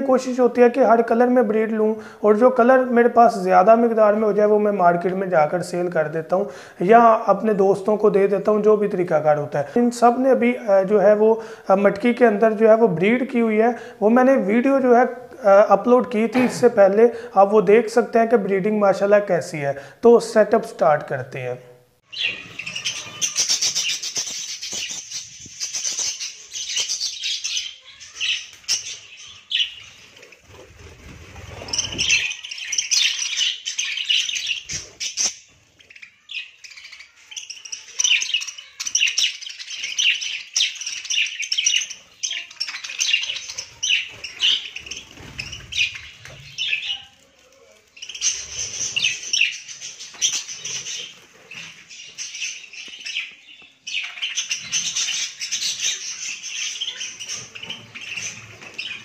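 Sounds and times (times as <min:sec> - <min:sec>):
budgerigars chattering and chirping: 0:22.1 - 0:30.6, 0:31.4 - 0:47.1, 0:48.0 - 0:59.0.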